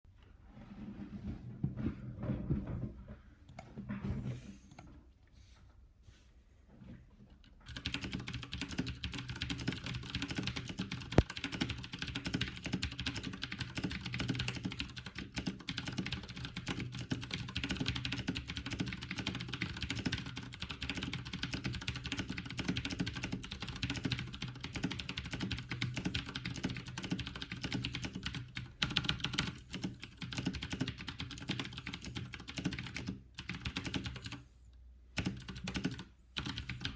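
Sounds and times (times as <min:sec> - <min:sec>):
fast typing on clicky keyboard: 0:07.6 - 0:34.4, 0:35.1 - 0:36.9.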